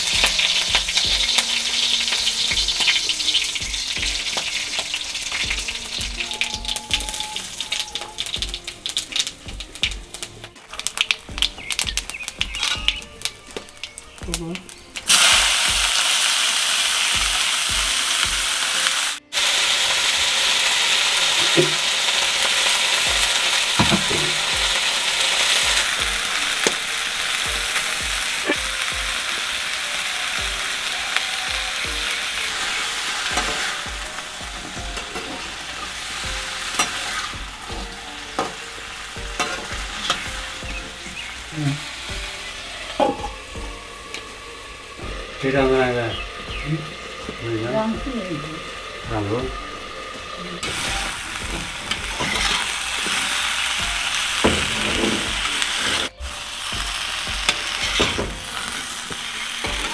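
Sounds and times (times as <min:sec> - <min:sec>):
cauliflower sizzling in oil: 0:00.0 - 0:59.9.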